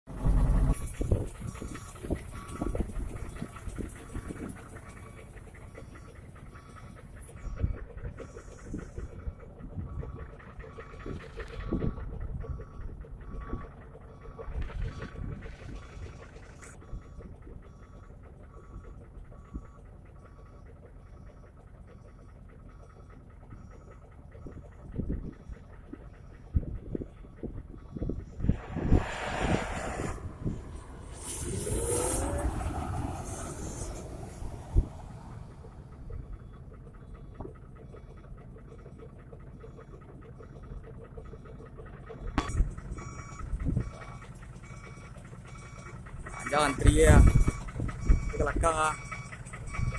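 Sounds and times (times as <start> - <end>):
diesel truck engine idling: 0.1 - 49.9
faint electronic warning beeps: 16.8 - 25.7, 42.4 - 49.9.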